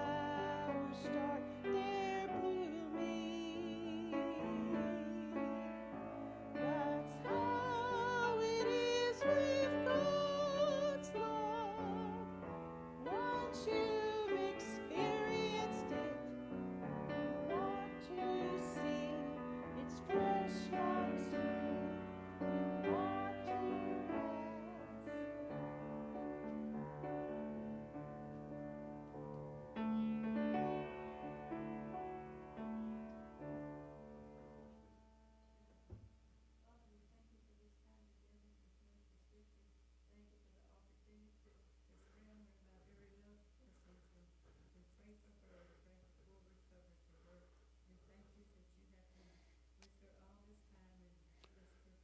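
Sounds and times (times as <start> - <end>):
person singing with vibrato: 0.0 - 26.2
piano accompaniment: 0.0 - 35.5.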